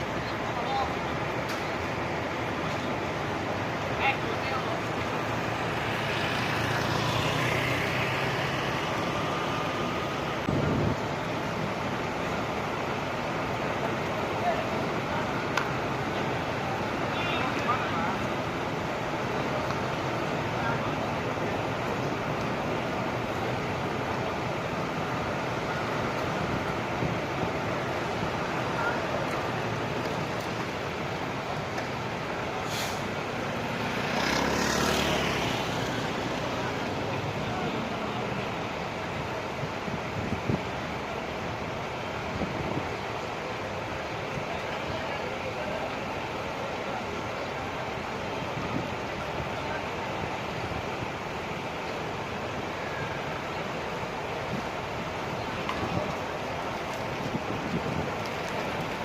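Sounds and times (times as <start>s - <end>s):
road traffic rushing past: 0.0s - 59.0s
heavy vehicle engine passing: 2.4s - 13.5s, 17.8s - 39.0s
air brake hiss: 32.6s - 33.1s.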